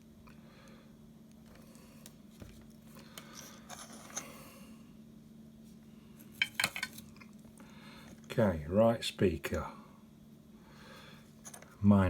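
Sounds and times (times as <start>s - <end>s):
faint low hum: 0.0s - 12.0s
scrapes and clicks of tools: 3.1s - 4.4s, 11.4s - 11.8s.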